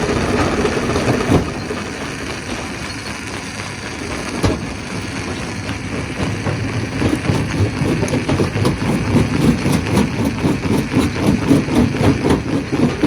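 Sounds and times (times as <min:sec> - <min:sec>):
stone crusher rumbling clatter: 0:00.0 - 0:13.0
sharp knocks: 0:04.2 - 0:13.0.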